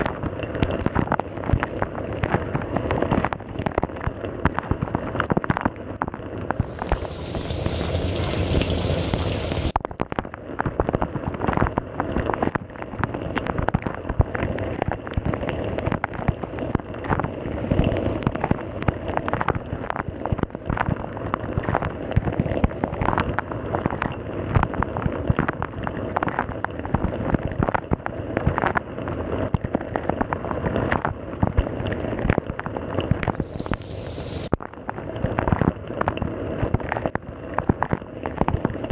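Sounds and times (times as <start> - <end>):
bright high hiss: 6.6 - 9.8, 33.4 - 34.6
water spraying in dishwasher: 6.6 - 9.8.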